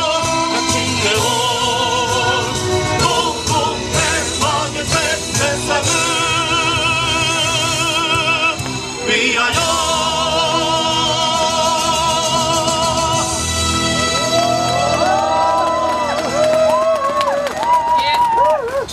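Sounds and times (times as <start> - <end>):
person singing with vibrato: 0.0 - 14.6
instrumental accompaniment: 0.0 - 16.4.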